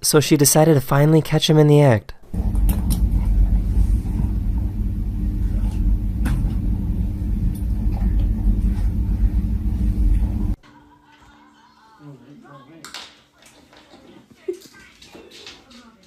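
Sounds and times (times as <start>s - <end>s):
low mechanical rumble and hum: 2.4s - 10.6s.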